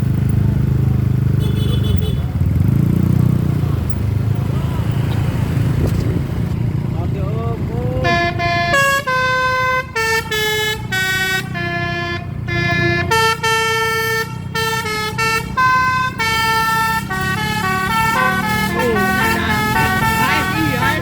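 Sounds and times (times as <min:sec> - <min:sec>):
multi-tone bus horn tune: 0:01.4 - 0:02.4, 0:08.0 - 0:21.0.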